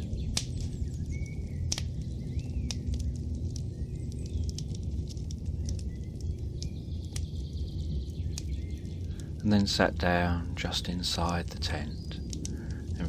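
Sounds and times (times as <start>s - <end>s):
faint bird chirps: 0.0s - 4.7s, 5.4s - 9.9s
campfire crackling and popping: 0.0s - 13.0s
low rumble: 0.0s - 13.0s.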